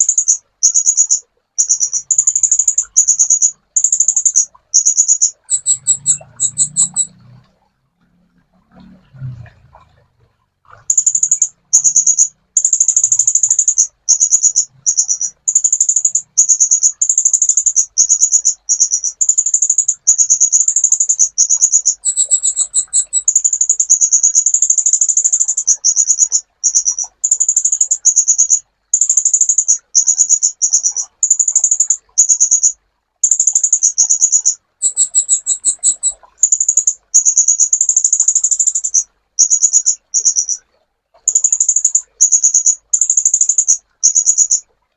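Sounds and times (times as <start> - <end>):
sunbird singing high trilled song: 0.0 - 7.2, 10.9 - 24.4, 33.6 - 38.0.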